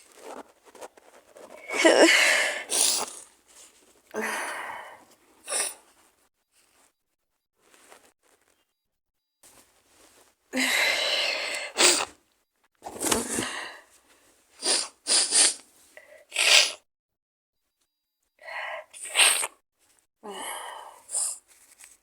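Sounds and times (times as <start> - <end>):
woman sneezing: 1.7 - 3.1.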